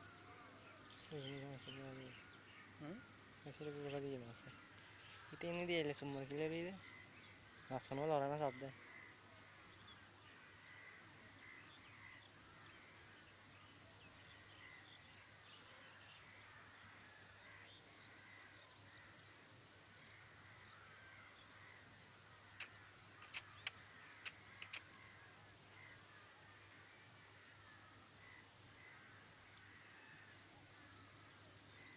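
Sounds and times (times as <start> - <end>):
faint bird calls: 0.0 - 31.9
short sharp clicks: 22.6 - 24.9.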